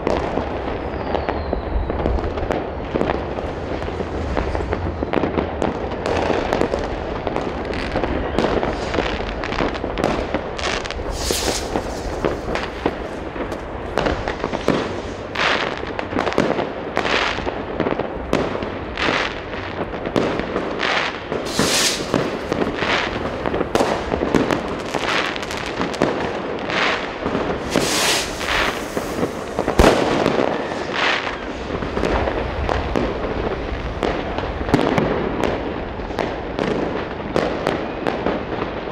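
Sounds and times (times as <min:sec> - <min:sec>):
fireworks and firecrackers: 0:00.0 - 0:38.9
hissing crackle: 0:10.7 - 0:15.8, 0:21.4 - 0:26.0, 0:26.9 - 0:32.9.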